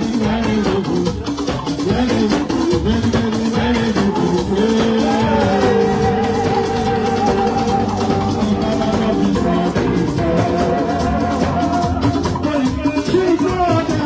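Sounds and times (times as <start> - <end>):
guitar: 0.0 - 14.0
live band music: 0.0 - 14.0
sung melodic lines: 3.5 - 14.0.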